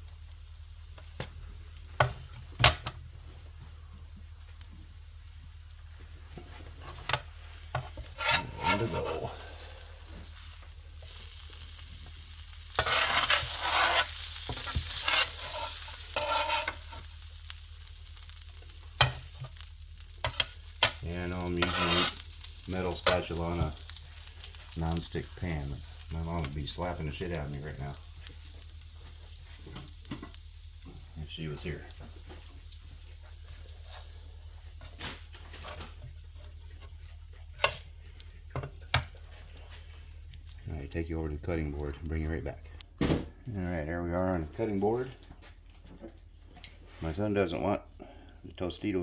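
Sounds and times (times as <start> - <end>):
meat and vegetables sizzling: 0.0 - 42.9
metal spatula scraping griddle: 7.8 - 17.1, 20.2 - 24.3.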